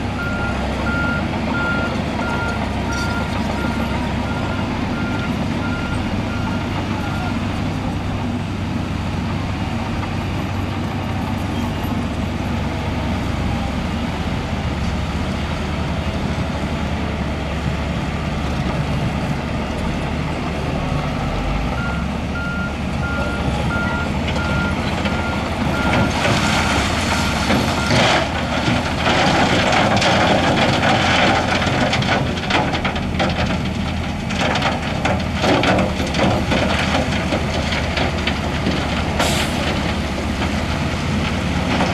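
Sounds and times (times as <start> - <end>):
heavy diesel machinery running: 0.0 - 41.9
gravel and rock crunching: 23.1 - 41.9.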